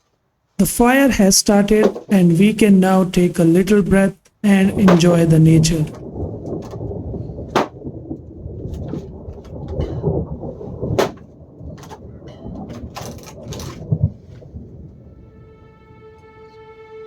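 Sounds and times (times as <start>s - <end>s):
rain falling: 0.6s - 17.0s
wood fire cracking and popping: 4.6s - 15.1s
music: 15.1s - 17.0s.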